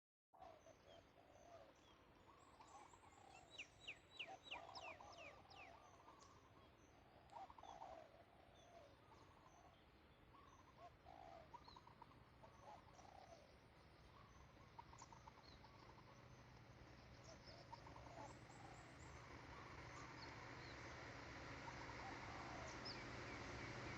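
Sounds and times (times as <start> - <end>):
low warbling bird calls: 0.4 - 23.9
low steady rumble: 11.9 - 23.9
high downward-sweeping bird chirps: 14.4 - 23.9.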